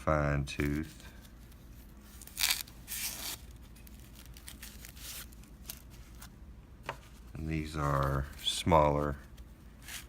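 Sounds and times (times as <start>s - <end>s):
packaging crinkling: 1.2s - 6.3s.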